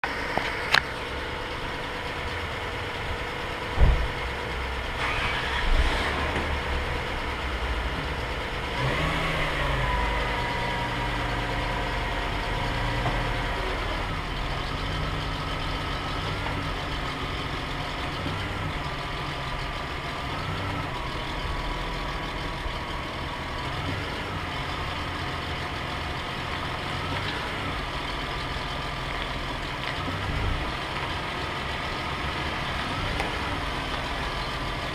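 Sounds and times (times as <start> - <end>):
car engine idling: 0.0 - 34.9
transmission clunk: 3.7 - 4.4.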